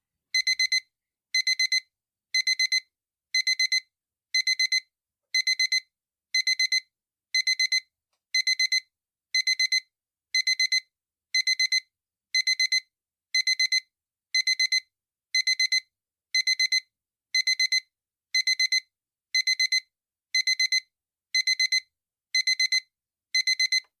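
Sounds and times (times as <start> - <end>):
digital alarm clock beeping: 0.4 - 0.8, 1.4 - 1.8, 2.4 - 2.8, 3.4 - 3.8, 4.4 - 4.8, 5.4 - 5.8, 6.4 - 6.8, 7.4 - 7.8, 8.4 - 8.8, 9.4 - 9.8, 10.4 - 10.8, 11.4 - 11.8, 12.4 - 12.8, 13.4 - 13.8, 14.4 - 14.8, 15.4 - 15.8, 16.4 - 16.8, 17.4 - 17.8, 18.4 - 18.8, 19.4 - 19.8, 20.4 - 20.8, 21.4 - 22.8, 23.4 - 23.8.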